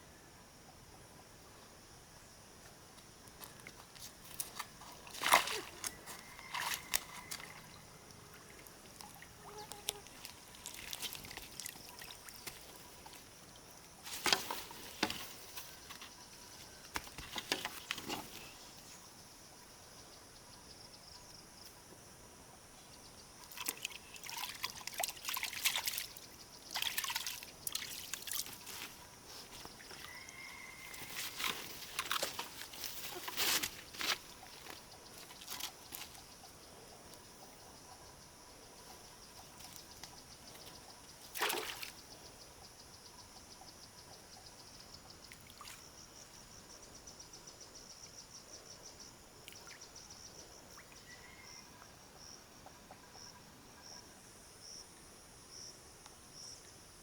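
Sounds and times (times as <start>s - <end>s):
water splashing and trickling: 3.6s - 18.6s, 23.4s - 36.3s, 39.4s - 42.3s, 45.1s - 46.2s.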